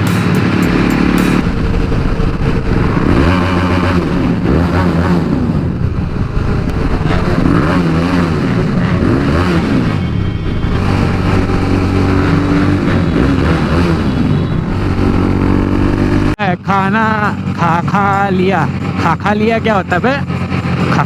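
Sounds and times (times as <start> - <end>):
motorcycle engine revving: 0.0 - 16.4.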